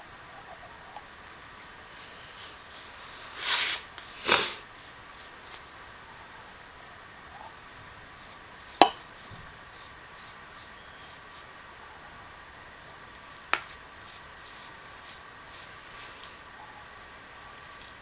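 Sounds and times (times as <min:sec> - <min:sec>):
faint steady hum: 0:00.0 - 0:18.0
hard objects knocking: 0:08.8 - 0:09.1.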